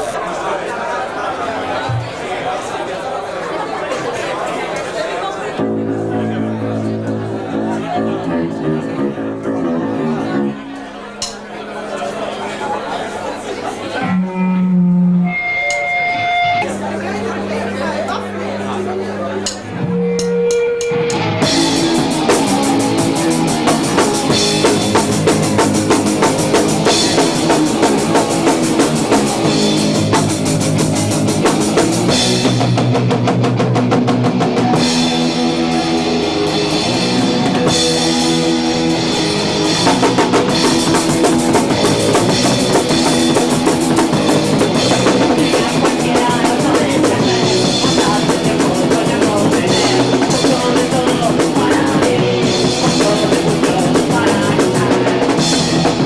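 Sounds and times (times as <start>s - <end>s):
guitar: 1.2s - 2.6s, 4.8s - 56.0s
punk band playing live: 1.6s - 2.4s, 5.6s - 56.0s
fast drum kit: 20.2s - 56.0s.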